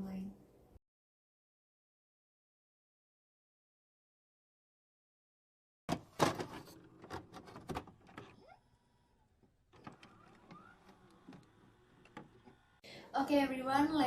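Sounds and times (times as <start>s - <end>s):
sharp clicks and knocks: 9.4s - 12.7s.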